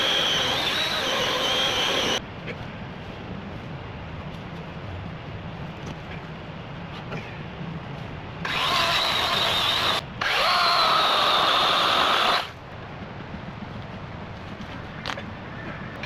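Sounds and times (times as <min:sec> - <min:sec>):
electric chainsaw cutting log: 0:00.0 - 0:02.2, 0:08.4 - 0:12.6.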